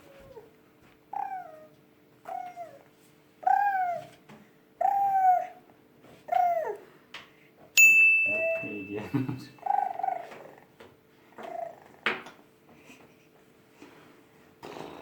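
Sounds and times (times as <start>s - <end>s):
baby squealing like a cat: 3.4s - 4.1s.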